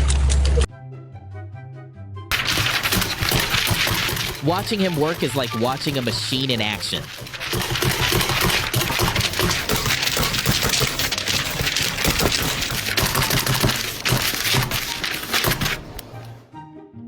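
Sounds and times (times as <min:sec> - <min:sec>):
rapid clicking and crackling: 0:02.3 - 0:16.4.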